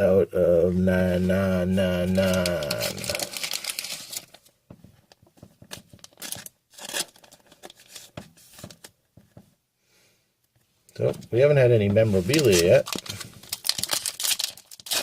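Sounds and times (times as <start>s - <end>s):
paper and foil tearing: 2.1s - 4.5s, 6.0s - 8.1s, 12.1s - 15.0s.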